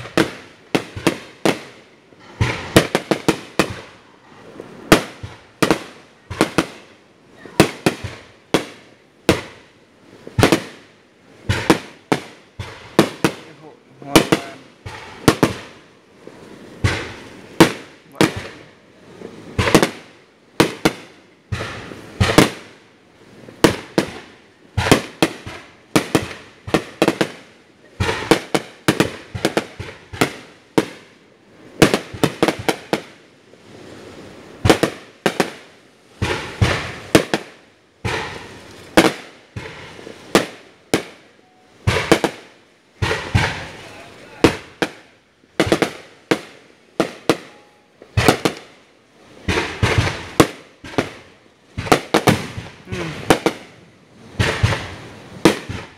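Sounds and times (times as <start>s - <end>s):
fireworks shells bursting: 11.4s - 22.8s, 33.9s - 55.9s.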